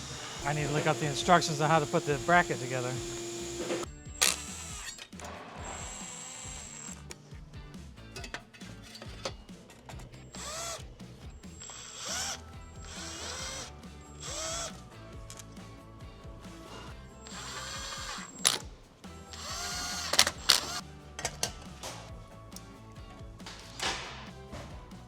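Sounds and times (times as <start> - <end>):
power drill motor whine: 0.0 - 7.1, 10.2 - 14.8, 17.1 - 18.6, 19.2 - 20.8
sharp clicks: 0.3 - 4.9, 17.3 - 18.7.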